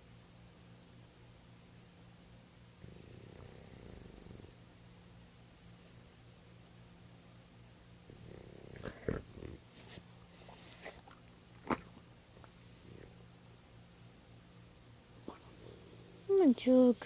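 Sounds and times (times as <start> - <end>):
pet snoring softly: 2.8 - 4.6, 8.0 - 13.3, 15.2 - 16.3.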